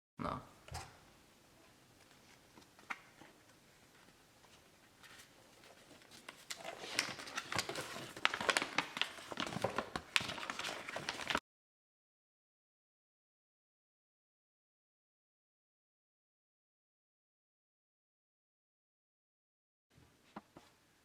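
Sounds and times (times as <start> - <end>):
packaging crinkling and rustling: 2.1 - 11.4.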